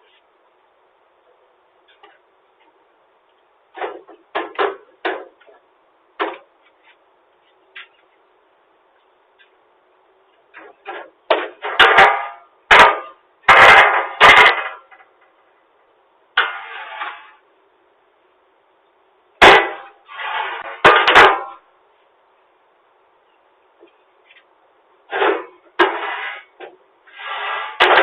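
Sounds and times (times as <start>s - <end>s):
loud sharp bangs: 11.3s - 14.9s, 19.4s - 21.6s.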